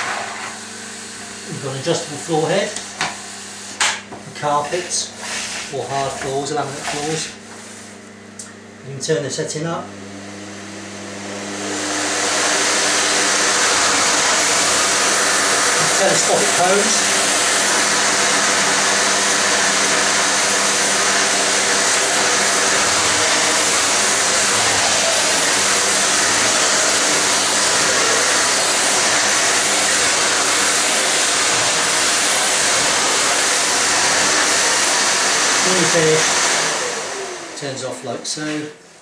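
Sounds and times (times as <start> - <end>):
vacuum cleaner running: 0.0 - 39.0.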